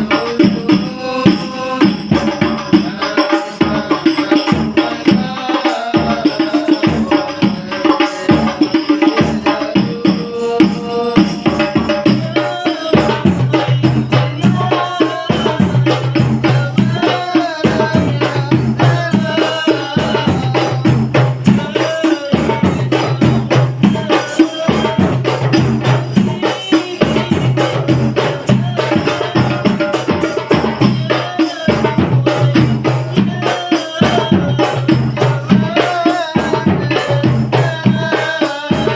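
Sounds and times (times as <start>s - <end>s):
frame drums playing: 0.0s - 38.9s
person singing: 0.0s - 38.9s.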